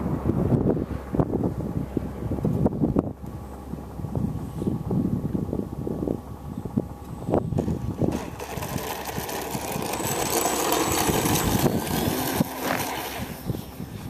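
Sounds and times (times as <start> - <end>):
wind buffeting microphone: 0.0 - 14.0
model plane motor whine: 7.0 - 14.0.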